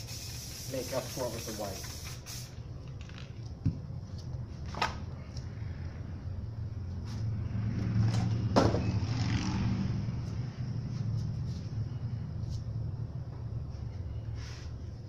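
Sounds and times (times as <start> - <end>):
low mechanical rumble: 10.0 - 15.0.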